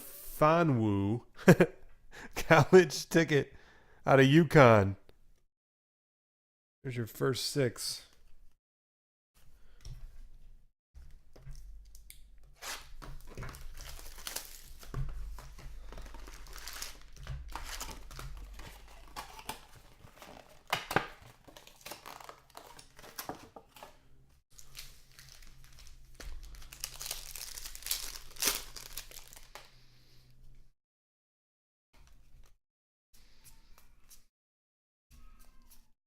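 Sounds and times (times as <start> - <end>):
card packaging crinkling and tearing: 12.6 - 24.0, 24.6 - 29.7
sharp packaging snaps: 24.6 - 29.6.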